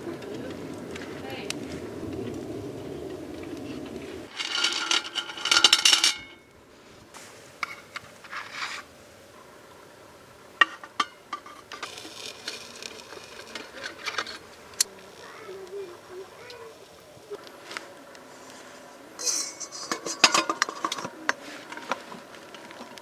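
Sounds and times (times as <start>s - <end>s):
metallic clattering: 4.3s - 6.5s, 19.2s - 22.0s
sharp metal clinks: 19.2s - 19.8s.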